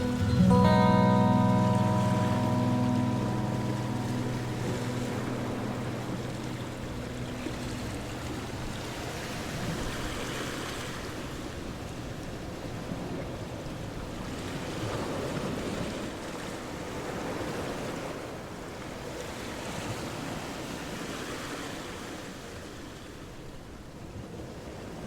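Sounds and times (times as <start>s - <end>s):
rushing surf: 0.0s - 12.0s.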